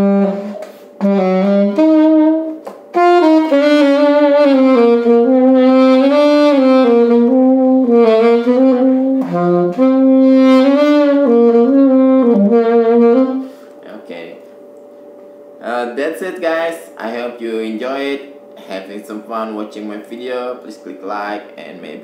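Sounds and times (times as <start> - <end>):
alto saxophone solo melody: 0.0 - 13.7.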